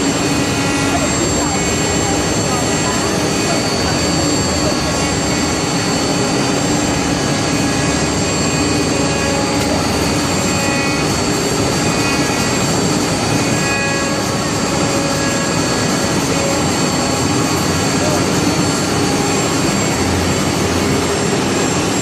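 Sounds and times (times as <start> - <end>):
high whine: 0.0 - 22.0
wood router machining noise: 0.0 - 22.0.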